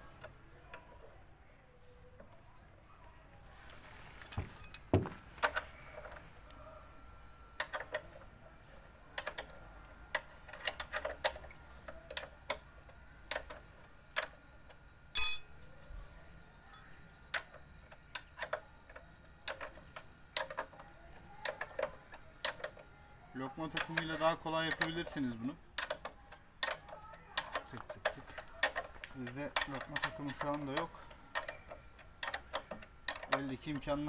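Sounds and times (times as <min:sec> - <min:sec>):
ringing clink of metal on metal: 0:15.1 - 0:15.9
spanner clicking and tapping on bolts: 0:23.6 - 0:34.0.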